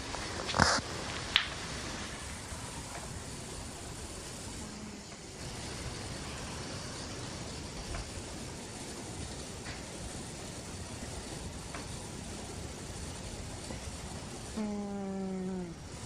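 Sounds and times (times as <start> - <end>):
cat snoring: 4.6 - 5.0, 14.5 - 16.0.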